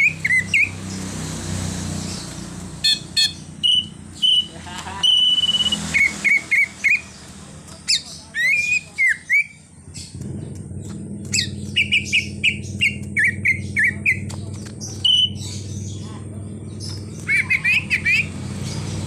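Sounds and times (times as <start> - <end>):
bird singing whistled notes: 0.0 - 0.8, 2.1 - 10.2, 10.8 - 16.0.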